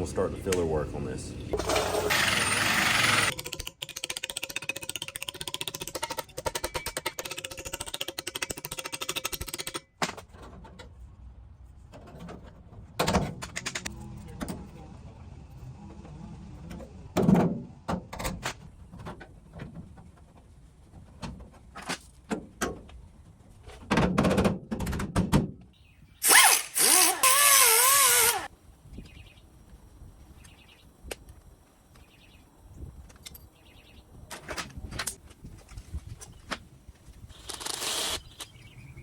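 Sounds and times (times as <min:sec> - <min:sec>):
power tool running under load: 0:01.6 - 0:03.3, 0:26.2 - 0:28.5
knocks and clicks of handling metal: 0:05.3 - 0:10.9.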